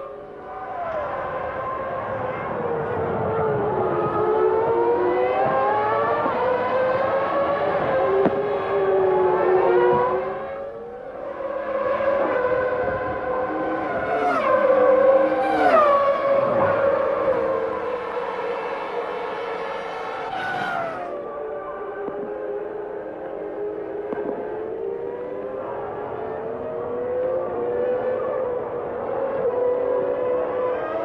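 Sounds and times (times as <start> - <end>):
race car engine at high revs: 0.1 - 31.0.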